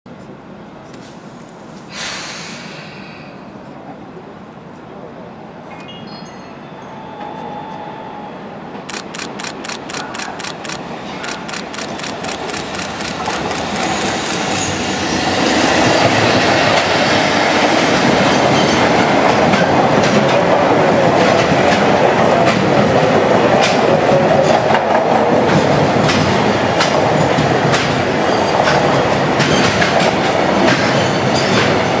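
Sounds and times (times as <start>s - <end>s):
freight train rumbling past: 10.0s - 32.0s.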